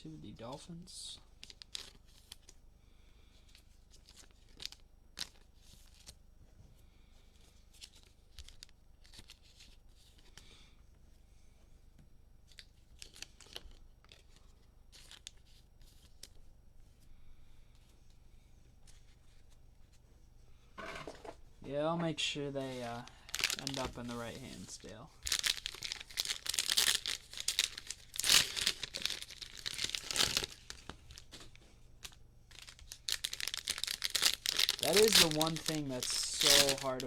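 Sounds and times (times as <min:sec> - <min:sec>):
trading cards and wrappers rustling: 0:12.5 - 0:16.4, 0:22.1 - 0:37.0.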